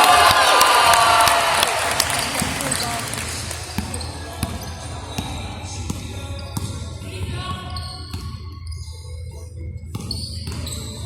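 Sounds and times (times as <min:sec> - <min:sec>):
basketball bouncing on court: 0:02.0 - 0:08.4, 0:09.9 - 0:11.0.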